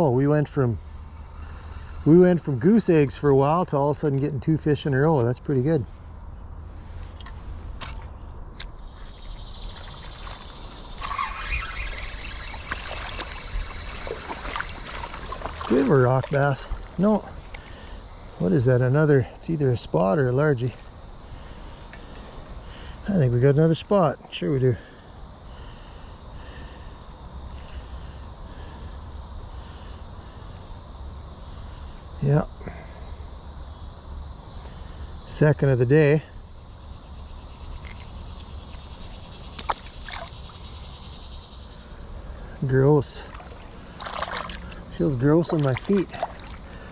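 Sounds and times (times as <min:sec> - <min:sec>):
high insect buzz: 0:00.0 - 0:46.9
water trickling: 0:09.6 - 0:18.0, 0:39.6 - 0:40.8, 0:42.9 - 0:46.9.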